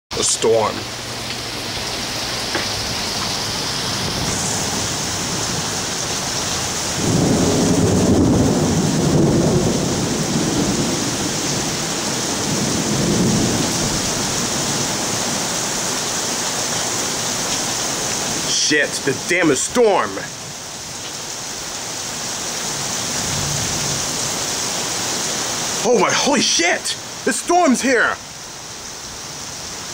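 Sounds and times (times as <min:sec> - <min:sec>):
rain falling: 0:00.1 - 0:29.9
thunder rumbling low: 0:03.6 - 0:15.4, 0:22.8 - 0:24.2.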